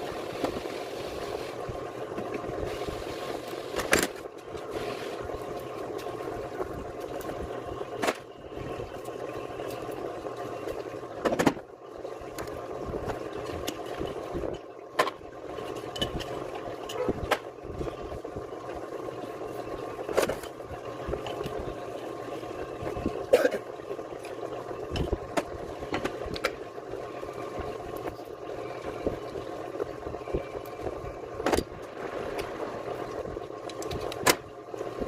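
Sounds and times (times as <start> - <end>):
steady mechanical hum: 0.0 - 35.0.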